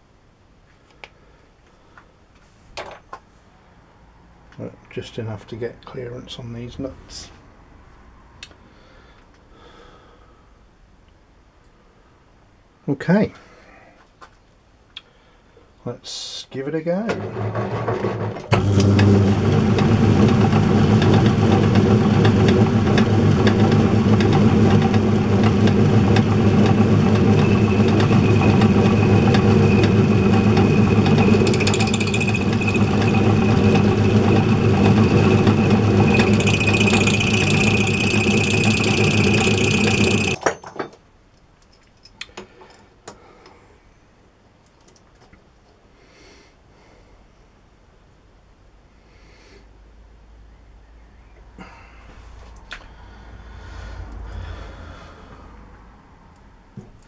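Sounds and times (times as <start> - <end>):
high cutting whine: 26.7 - 40.4
machine tool cutting steel: 27.3 - 40.4.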